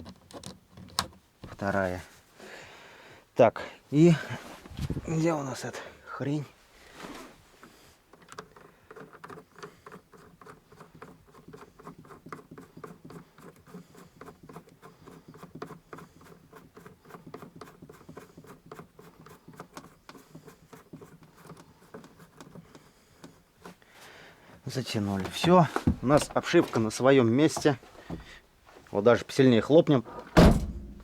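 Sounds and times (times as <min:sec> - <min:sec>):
screwdriver clicking and scratching: 0:07.6 - 0:23.8.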